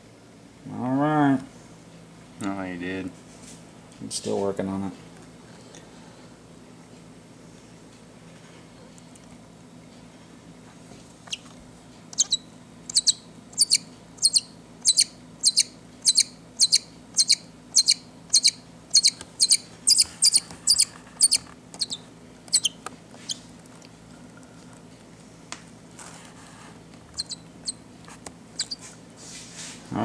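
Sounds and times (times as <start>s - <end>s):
baby bird calling: 12.2s - 23.4s, 27.2s - 27.8s, 28.6s - 28.9s.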